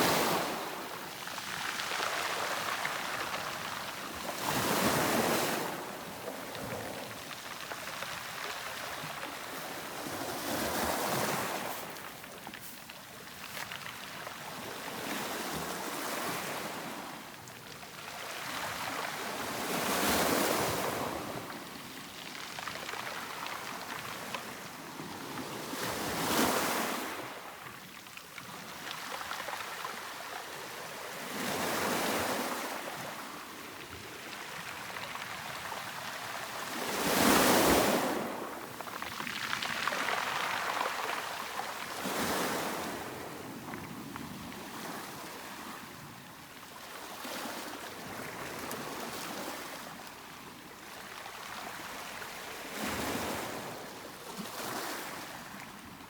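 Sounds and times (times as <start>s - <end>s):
sea waves washing in: 0.0s - 12.9s, 34.6s - 43.8s.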